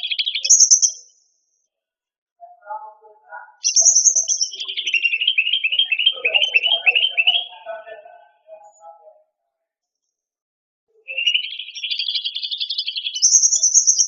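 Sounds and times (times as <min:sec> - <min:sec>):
songbird singing trills and chirps: 0:00.0 - 0:01.3, 0:03.3 - 0:08.9, 0:11.0 - 0:14.0.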